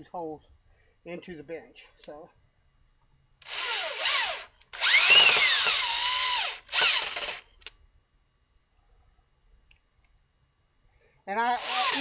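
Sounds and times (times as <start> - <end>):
cordless drill driving screws: 3.4 - 7.4, 11.6 - 12.0.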